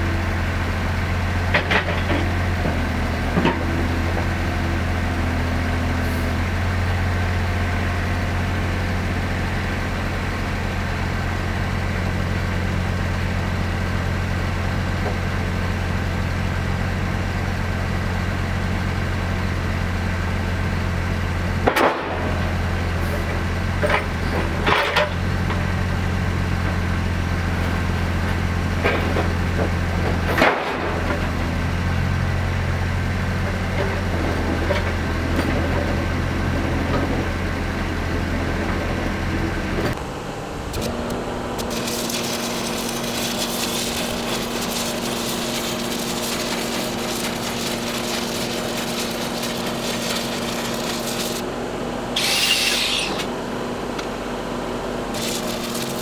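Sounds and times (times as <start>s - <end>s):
engine running: 0.0s - 56.0s
short high squeal: 52.2s - 53.3s.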